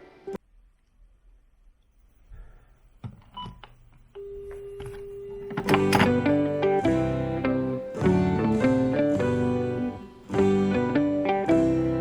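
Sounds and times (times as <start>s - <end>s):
telephone dial tone: 4.2s - 6.4s
plucked guitar music: 5.6s - 12.0s.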